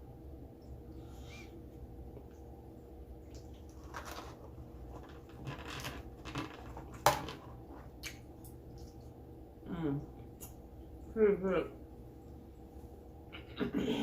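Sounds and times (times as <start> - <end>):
food rustles and scrapes: 3.6 - 8.0.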